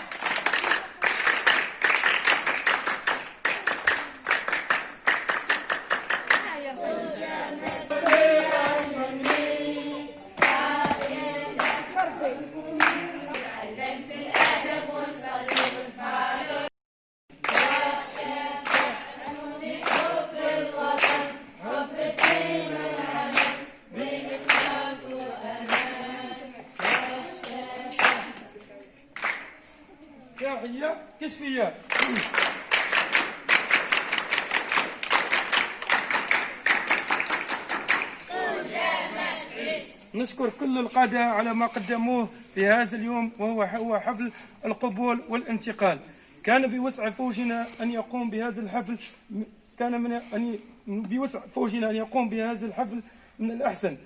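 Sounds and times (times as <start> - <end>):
fast applause: 0.0 - 6.5, 31.9 - 38.2
clapping a steady beat: 0.0 - 6.6, 7.5 - 15.9, 17.3 - 29.7, 31.8 - 38.4
group singing a chant: 6.3 - 16.7, 17.3 - 28.7, 37.4 - 40.2.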